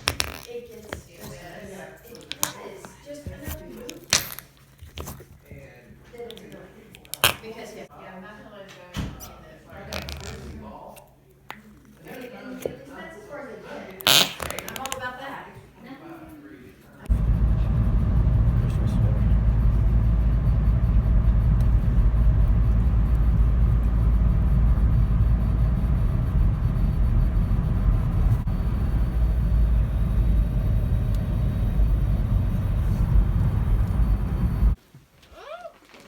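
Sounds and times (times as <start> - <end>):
vehicle road noise rumble: 17.1 - 34.8.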